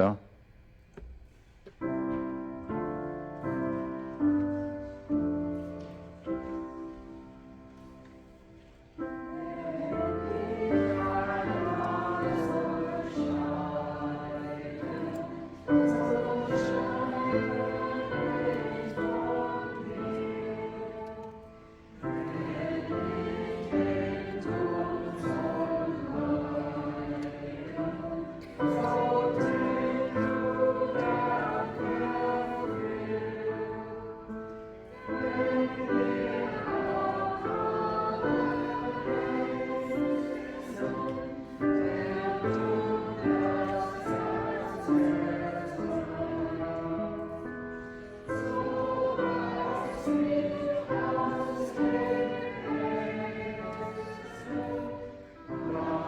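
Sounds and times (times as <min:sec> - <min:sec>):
church choir singing: 0:01.7 - 0:56.0.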